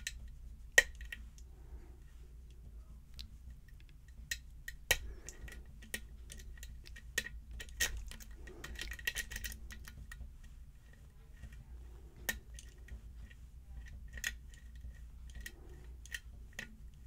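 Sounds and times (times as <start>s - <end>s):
lock pick clicks and scrapes: 4.3s - 10.0s.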